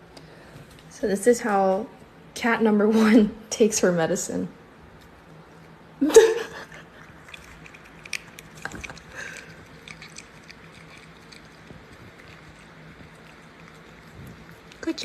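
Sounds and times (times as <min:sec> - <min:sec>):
cat chewing and licking: 0:06.6 - 0:15.0.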